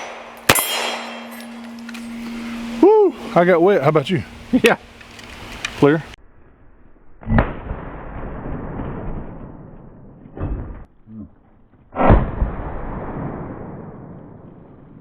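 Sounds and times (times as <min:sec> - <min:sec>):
gunshots with rolling echo: 0:00.0 - 0:02.7.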